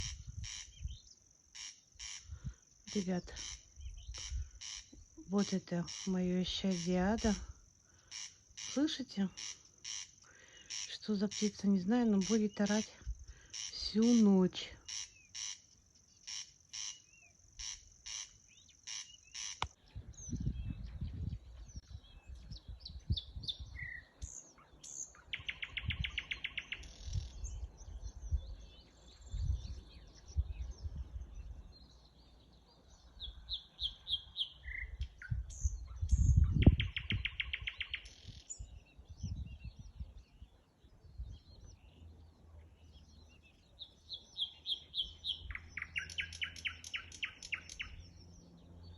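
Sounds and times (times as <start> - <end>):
birds chirping and trilling: 0.0 - 48.9.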